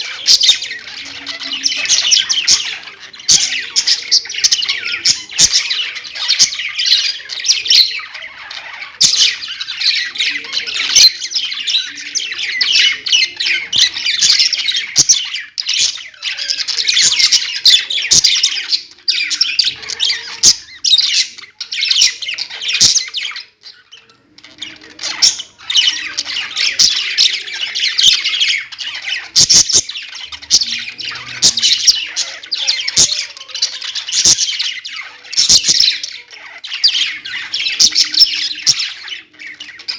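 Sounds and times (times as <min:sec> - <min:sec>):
budgerigars chirping and squawking: 0:00.0 - 0:39.9.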